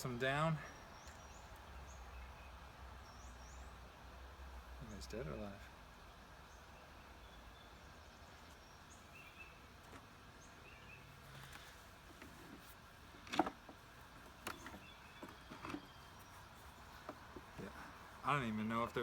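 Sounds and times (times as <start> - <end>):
wooden beehive parts clicking: 13.2 - 16.2.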